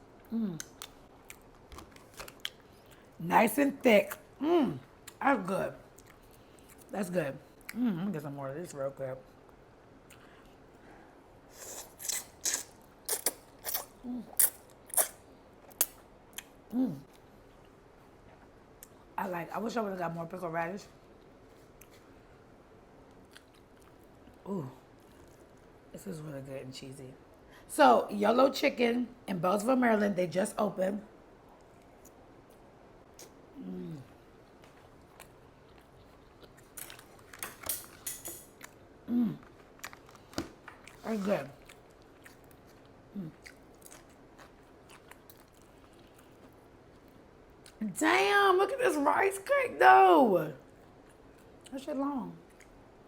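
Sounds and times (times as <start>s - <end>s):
person humming: 0.3s - 0.6s, 33.6s - 34.1s
person humming mm: 0.3s - 0.7s, 16.7s - 17.1s, 33.6s - 34.1s, 39.1s - 39.5s, 43.1s - 43.4s
chewing with wet mouth clicks: 5.9s - 6.9s, 23.3s - 24.4s, 34.4s - 37.3s, 41.6s - 47.8s, 52.4s - 52.8s.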